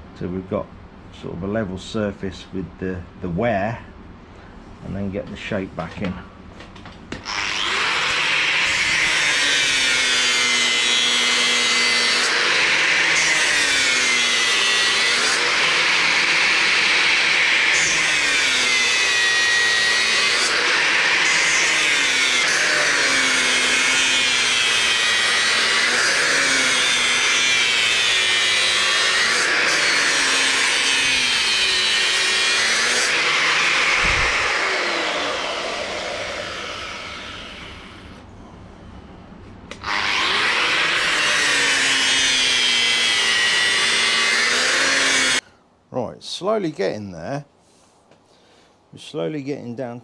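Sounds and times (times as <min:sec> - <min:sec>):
grinder grinding steel: 0:07.3 - 0:38.2, 0:39.7 - 0:45.4.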